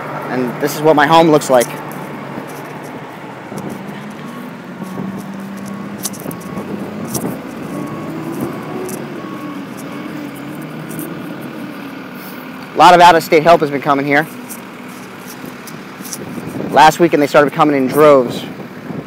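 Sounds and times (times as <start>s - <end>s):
vehicle engine running: 0.0s - 19.0s
sharp clicks: 1.5s - 11.9s
faint short beep: 7.6s - 10.4s.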